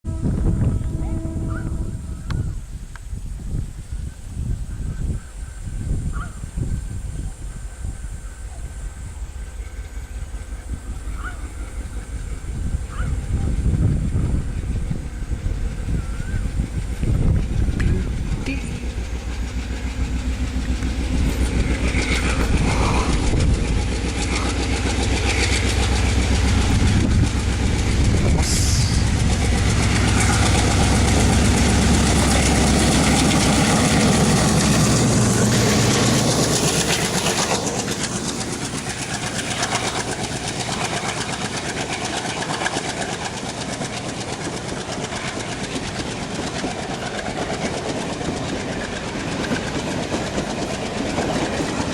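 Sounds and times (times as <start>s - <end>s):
diesel locomotive engine: 0.0s - 51.9s
train wheels clattering over rail joints: 9.4s - 51.9s.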